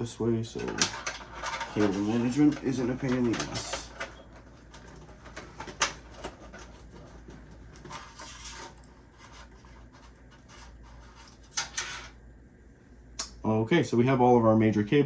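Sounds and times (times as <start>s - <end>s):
cable scraping against case: 0.6s - 11.9s.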